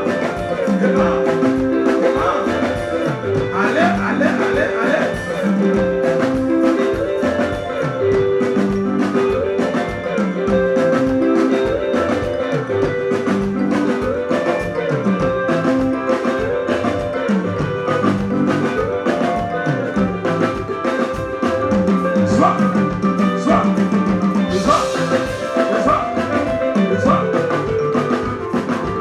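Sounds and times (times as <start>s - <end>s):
busy drum beat: 0.0s - 29.0s
live band playing dance music: 0.0s - 29.0s.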